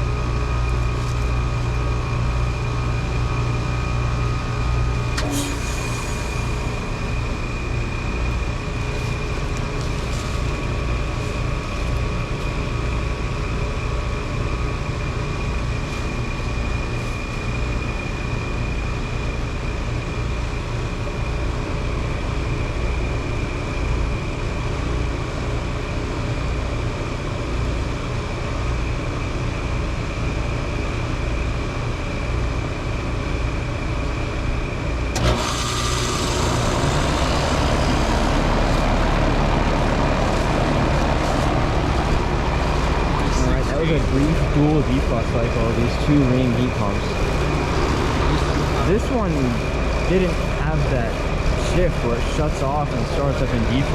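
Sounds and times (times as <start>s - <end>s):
high whine: 0.0s - 24.9s, 33.5s - 53.9s
heat pump compressor hum: 0.0s - 53.9s
refrigerant rushing hiss: 5.3s - 12.2s.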